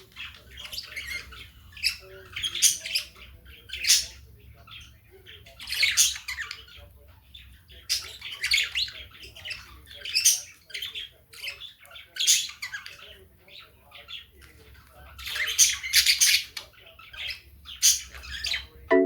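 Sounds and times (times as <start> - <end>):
birds chattering: 0.0 - 19.0.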